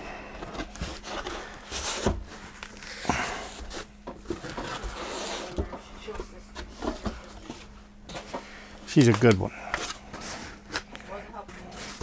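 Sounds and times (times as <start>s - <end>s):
short rustling scrapes: 0.6s - 5.6s.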